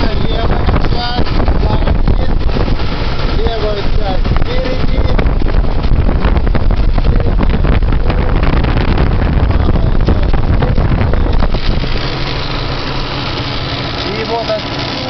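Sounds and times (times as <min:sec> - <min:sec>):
fast irregular ticking clatter: 0:00.0 - 0:15.0
engine idling: 0:06.6 - 0:15.0.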